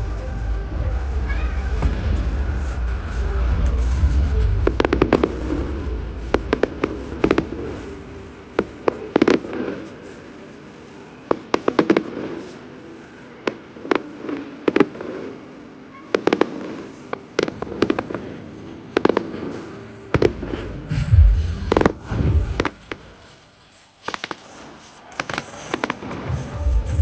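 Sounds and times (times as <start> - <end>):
low rumble: 0.0 - 8.5, 20.3 - 22.8
fireworks bangs with echo: 1.0 - 23.4, 24.0 - 27.0.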